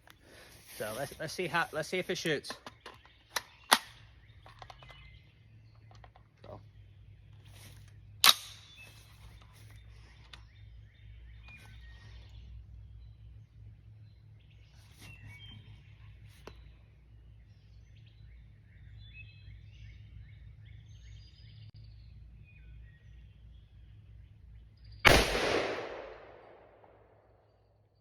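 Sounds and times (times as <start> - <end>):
birds chirping: 0.0 - 28.0
rifle shot with echo: 25.1 - 27.2.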